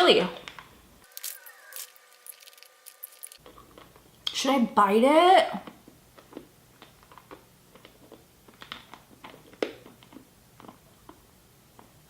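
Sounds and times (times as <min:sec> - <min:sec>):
hard candy sucked and chewed: 0:05.6 - 0:11.9.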